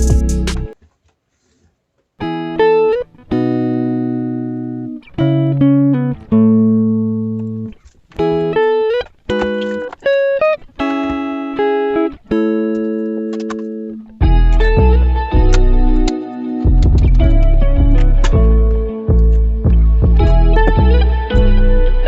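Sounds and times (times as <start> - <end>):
background music: 0.0 - 0.8, 14.2 - 22.0
plucked string melody: 2.2 - 22.0.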